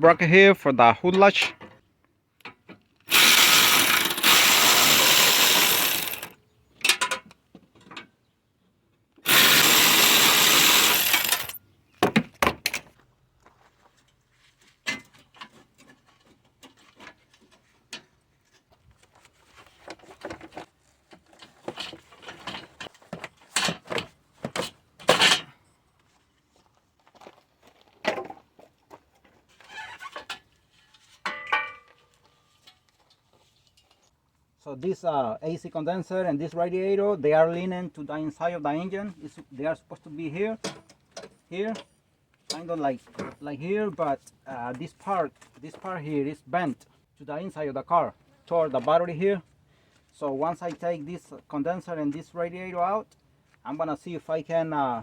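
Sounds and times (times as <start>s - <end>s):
cordless power tool spinning: 3.1s - 6.3s, 9.2s - 11.6s.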